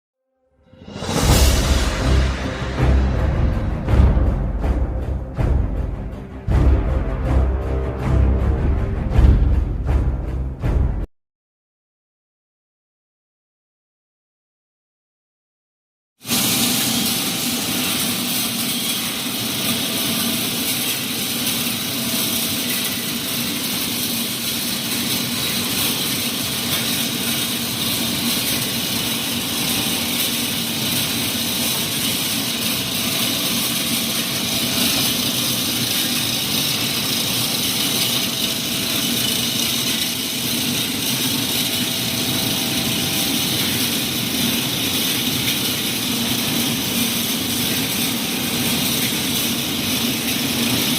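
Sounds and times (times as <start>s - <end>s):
machinery humming with hiss: 0.8s - 10.7s, 16.3s - 50.9s.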